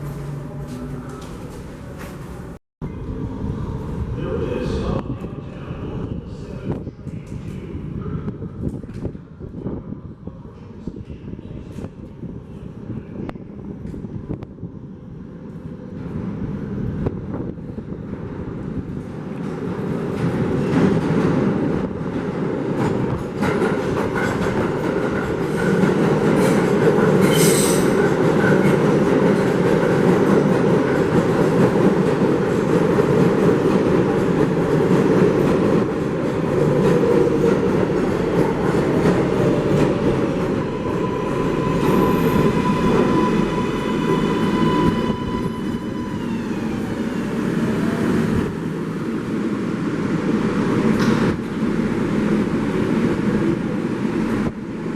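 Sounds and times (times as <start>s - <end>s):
subway train rumble: 0.0s - 54.9s
high screech: 40.8s - 46.8s.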